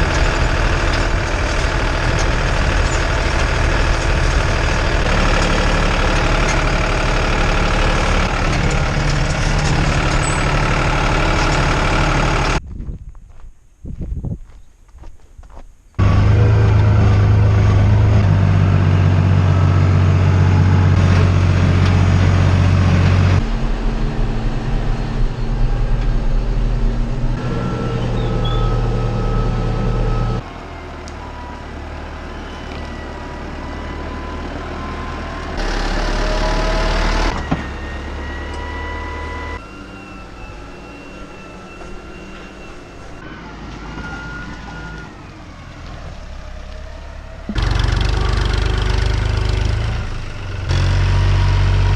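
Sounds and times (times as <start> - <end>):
tractor engines working: 0.0 - 12.6, 16.0 - 51.9
high whine: 16.0 - 30.4.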